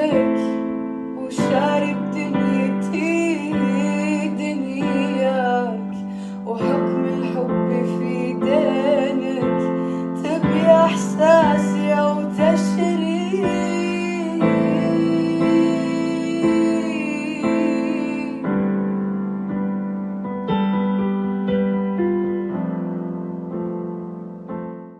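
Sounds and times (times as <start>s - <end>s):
electric piano chords: 0.0s - 24.9s
ornamented melody line: 0.0s - 24.9s.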